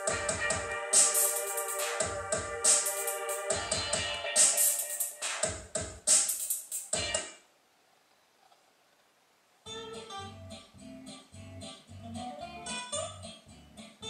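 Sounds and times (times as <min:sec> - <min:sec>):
music with punchy drum beats: 0:00.0 - 0:07.3
guitar-led music with bass: 0:09.7 - 0:14.0.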